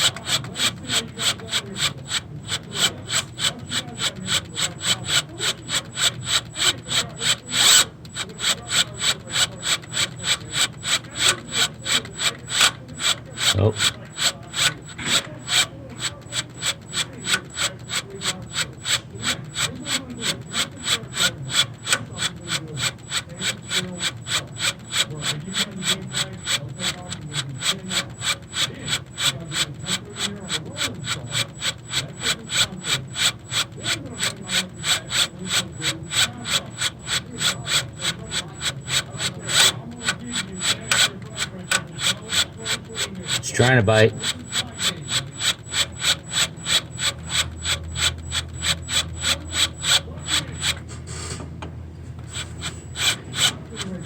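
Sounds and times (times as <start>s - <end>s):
drill bit grinding into bolt: 0.0s - 51.6s, 52.2s - 54.0s
loud scrape: 50.9s - 51.5s.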